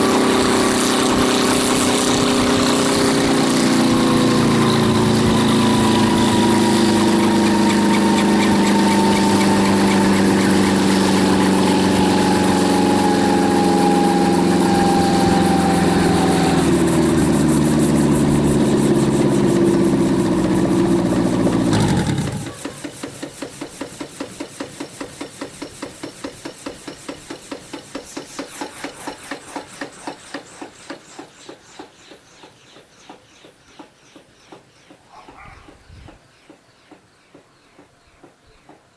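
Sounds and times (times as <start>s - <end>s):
rotor swishing: 0.0s - 23.7s
helicopter engine running: 0.0s - 31.5s.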